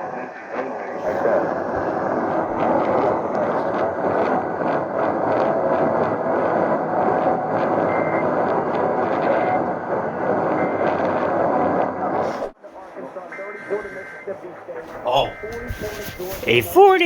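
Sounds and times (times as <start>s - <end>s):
radio static hiss: 1.0s - 4.7s, 14.9s - 17.0s.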